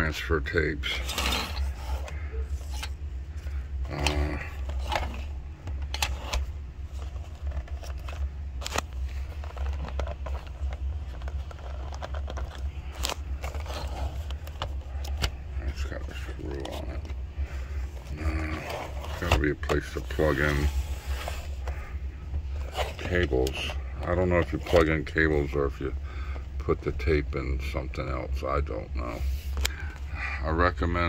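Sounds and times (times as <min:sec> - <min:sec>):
steady low hum: 0:00.0 - 0:31.0
handling clicks and scrapes: 0:00.8 - 0:17.2, 0:17.8 - 0:25.1.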